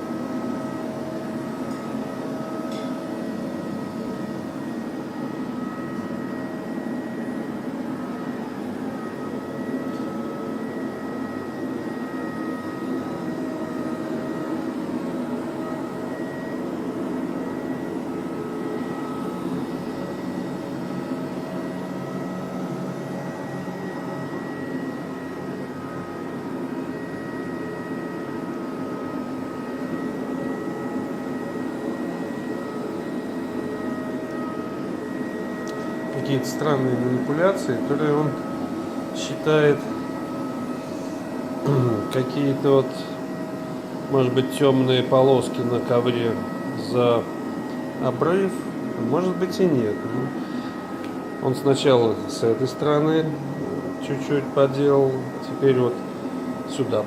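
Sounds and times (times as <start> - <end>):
robot vacuum running: 44.1 - 57.0.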